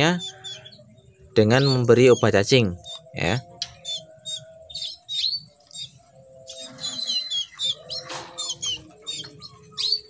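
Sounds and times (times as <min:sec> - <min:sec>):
young canaries chirping: 0:00.0 - 0:10.0.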